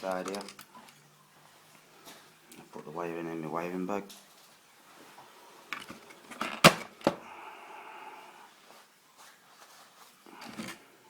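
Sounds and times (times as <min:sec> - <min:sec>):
plastic parts clicking and knocking: 0:00.0 - 0:01.0
soft rustle of bag: 0:08.5 - 0:11.0.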